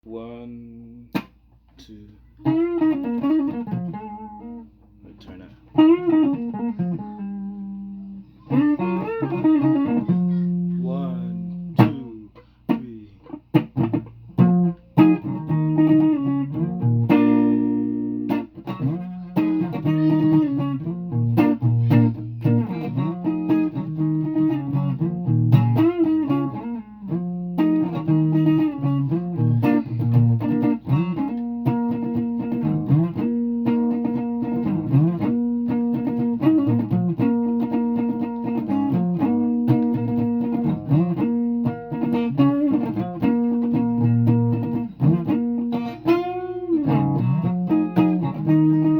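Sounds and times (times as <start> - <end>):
guitar playing: 0.1 - 48.9
person speaking a count-in: 1.8 - 2.3, 10.0 - 13.3.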